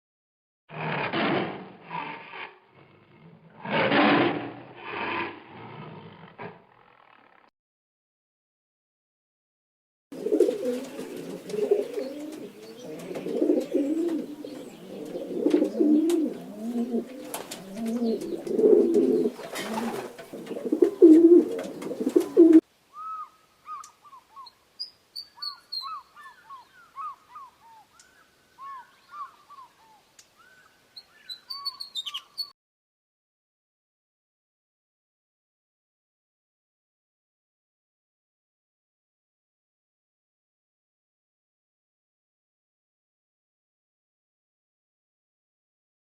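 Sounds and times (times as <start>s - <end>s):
birds cooing: 10.2s - 24.6s, 25.4s - 30.7s
small birds chirping: 10.2s - 32.6s.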